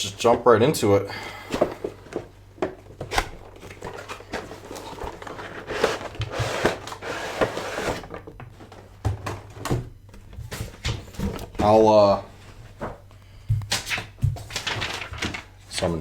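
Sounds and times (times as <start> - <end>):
packaging rustling: 1.4 - 9.0, 12.7 - 15.6.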